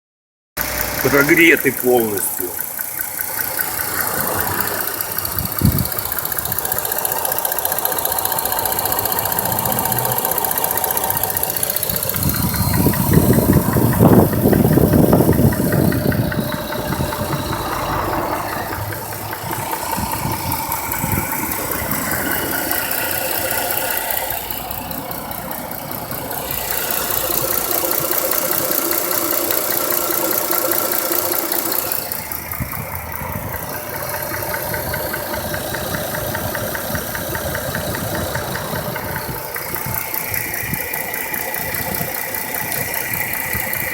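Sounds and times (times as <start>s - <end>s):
car engine idling with knock: 0.6s - 43.9s.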